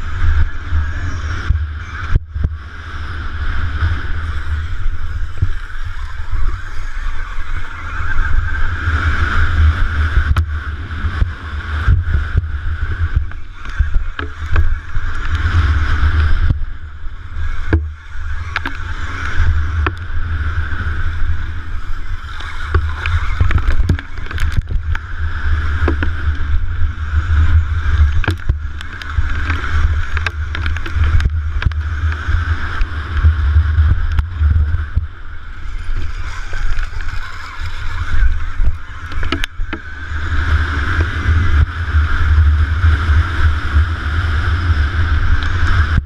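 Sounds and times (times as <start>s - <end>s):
wind buffeting: 0.0s - 46.0s
bike clicks and knocks: 22.2s - 25.1s, 25.8s - 26.5s, 28.0s - 35.1s, 36.2s - 40.0s.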